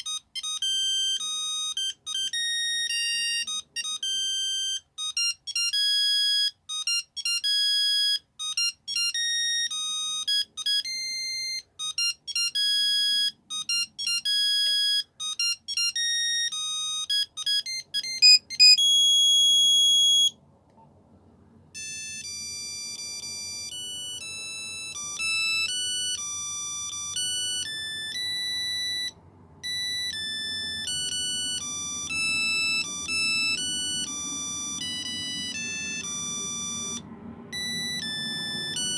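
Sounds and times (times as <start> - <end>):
monophonic phone ringtone: 0.0 - 20.4, 21.8 - 38.9.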